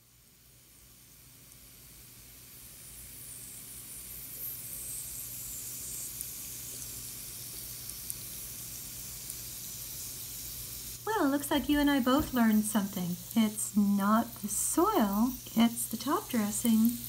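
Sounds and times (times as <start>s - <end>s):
soaking gravel sizzling: 5.0s - 17.0s.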